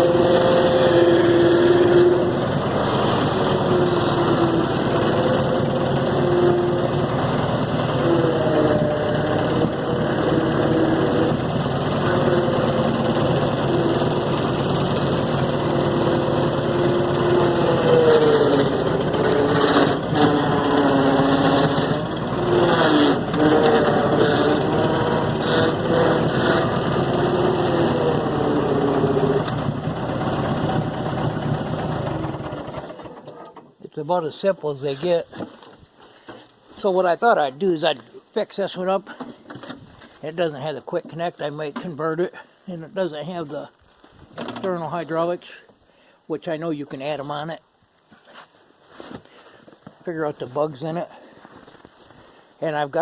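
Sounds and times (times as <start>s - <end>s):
loader engine running: 0.0s - 33.5s.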